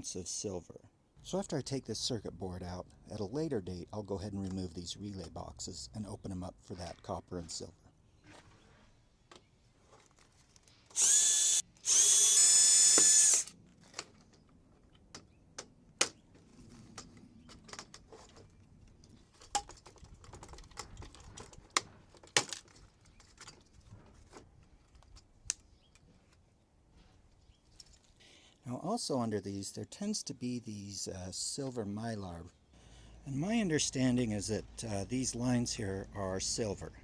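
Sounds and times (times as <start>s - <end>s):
parts clicking and knocking: 9.3s - 26.4s
power drill spinning: 10.8s - 13.6s.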